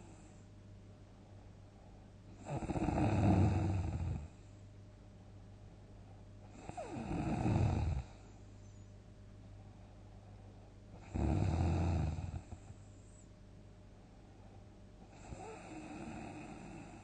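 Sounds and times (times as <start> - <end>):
person snoring loudly: 2.4 - 4.3, 6.5 - 8.2, 11.0 - 12.5, 15.1 - 17.0.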